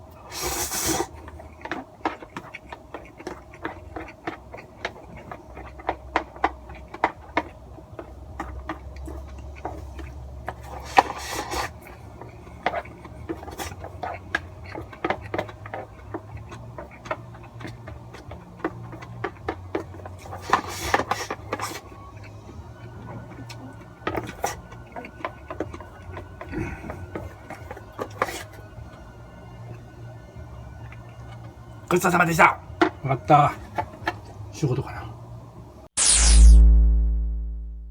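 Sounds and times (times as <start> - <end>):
noodle slurps: 0.0 - 29.8
chopsticks scraping cup: 0.2 - 29.0.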